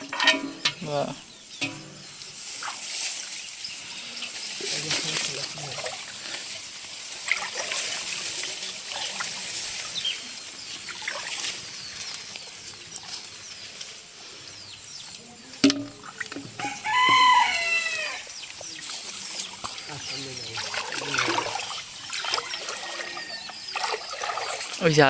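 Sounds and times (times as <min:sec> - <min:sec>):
water hissing: 0:00.9 - 0:25.0
rooster crowing: 0:16.6 - 0:18.3, 0:22.5 - 0:23.7.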